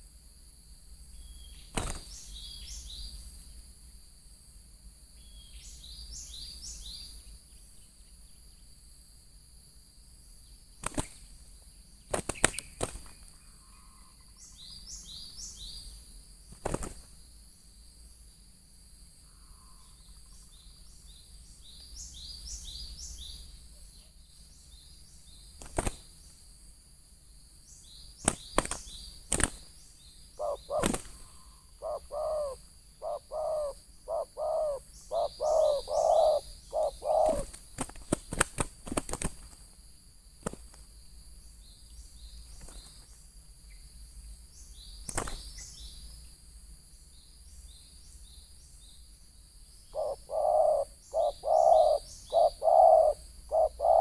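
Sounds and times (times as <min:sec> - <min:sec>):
small birds chirping: 0:01.0 - 0:04.1, 0:05.0 - 0:08.9, 0:10.3 - 0:26.6, 0:27.6 - 0:39.8, 0:40.4 - 0:54.0
dove cooing: 0:30.4 - 0:37.6, 0:49.9 - 0:54.0.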